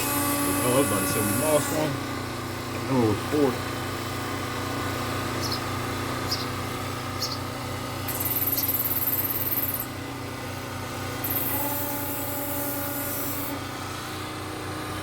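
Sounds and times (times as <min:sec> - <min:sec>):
high raspy buzz: 0:00.0 - 0:13.6
low mechanical hum: 0:00.0 - 0:15.0
nestling birds peeping: 0:05.1 - 0:09.9.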